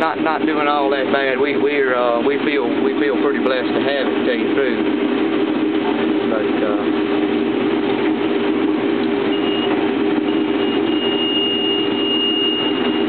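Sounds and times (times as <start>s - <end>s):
combine harvester humming: 0.0s - 13.0s
high-pitched tone: 9.2s - 13.0s.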